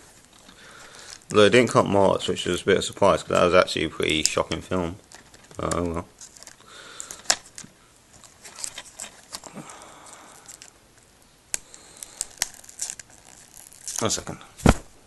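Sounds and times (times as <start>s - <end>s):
shrink-wrap crinkling and tearing: 8.2s - 10.8s, 11.5s - 14.8s.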